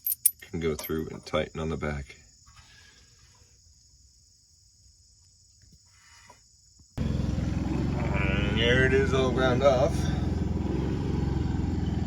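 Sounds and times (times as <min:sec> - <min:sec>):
loud low mechanical hum: 0:07.0 - 0:12.0.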